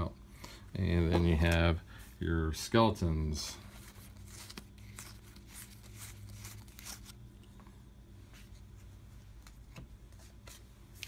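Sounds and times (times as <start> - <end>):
playing cards and packaging rustling: 2.7 - 11.0.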